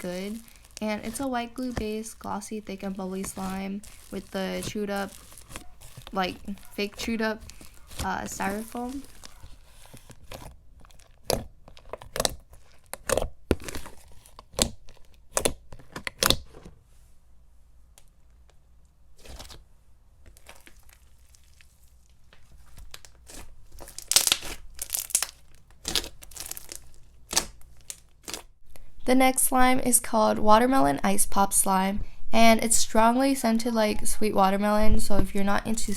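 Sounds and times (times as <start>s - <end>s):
slime popping and crackling: 0.0s - 16.4s, 20.3s - 28.6s.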